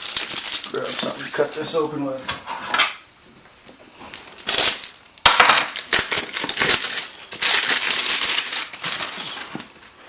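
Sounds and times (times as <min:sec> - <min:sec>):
plastic packaging crinkling and tearing: 0:00.0 - 0:02.0, 0:04.0 - 0:10.0.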